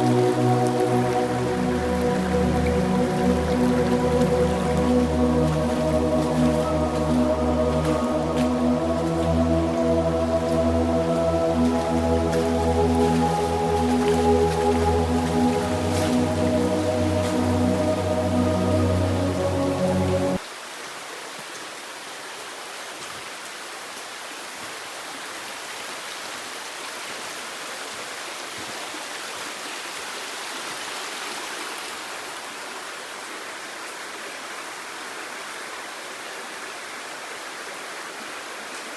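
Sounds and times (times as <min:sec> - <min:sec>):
waterfall rushing: 0:00.0 - 0:20.5.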